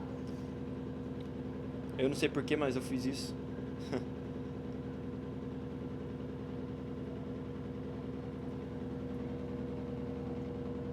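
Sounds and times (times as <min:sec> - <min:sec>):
washing machine spinning: 0:02.7 - 0:10.9.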